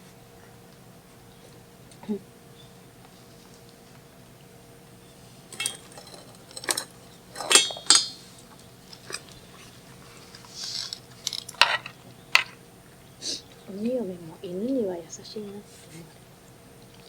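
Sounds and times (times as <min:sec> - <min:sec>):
tableware clinking: 0:05.5 - 0:08.3, 0:10.8 - 0:12.6.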